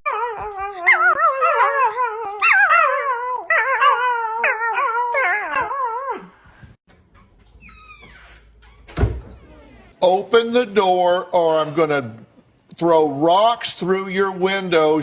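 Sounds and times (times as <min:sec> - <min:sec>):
dog howling: 0:00.0 - 0:06.3.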